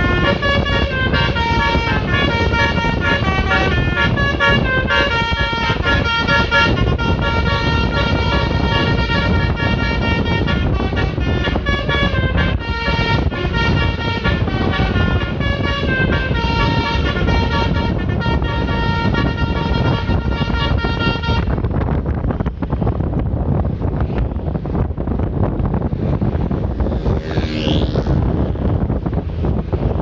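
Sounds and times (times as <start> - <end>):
multi-tone bus horn tune: 0.0 - 21.7
road and wind noise: 0.0 - 30.0.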